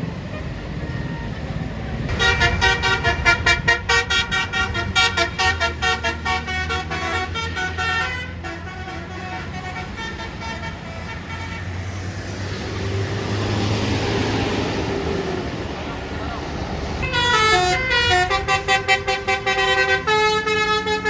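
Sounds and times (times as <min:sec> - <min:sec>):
bus engine running: 0:00.0 - 0:21.0
bus air horn melody: 0:02.1 - 0:12.1, 0:17.0 - 0:21.0.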